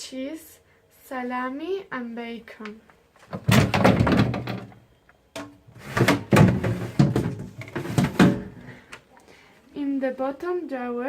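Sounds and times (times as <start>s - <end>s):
plastic drawers sliding and clattering: 3.3s - 4.7s, 5.7s - 8.7s.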